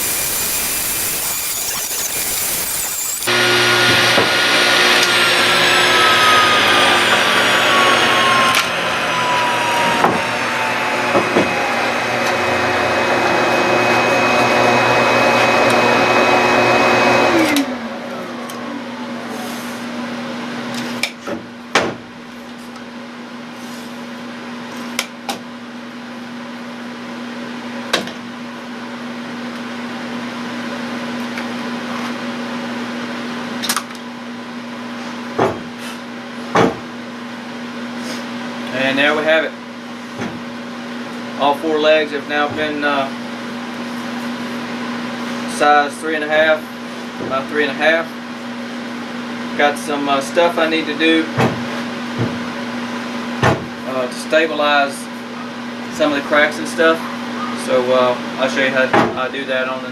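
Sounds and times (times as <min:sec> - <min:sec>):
table saw cutting wood: 0:00.0 - 0:20.0.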